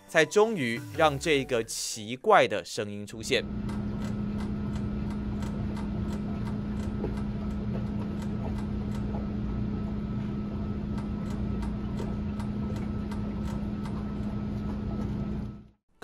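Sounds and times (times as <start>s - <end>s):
steady low hum: 3.2s - 15.8s
creaking ticks: 3.6s - 9.2s.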